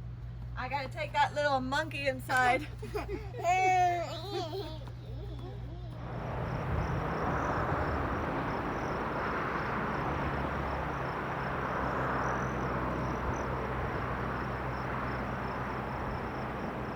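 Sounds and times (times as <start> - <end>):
low hum: 5.0 - 16.9
steady rushing noise: 6.0 - 16.9
high insect chirping: 6.4 - 16.9.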